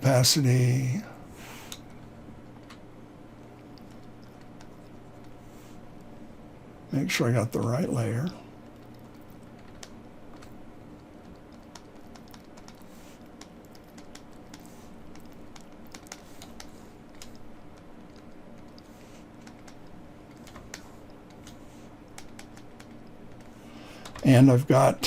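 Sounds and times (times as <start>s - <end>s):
faint low hum: 0.0s - 25.0s
keyboard and mouse clicks: 8.7s - 24.2s.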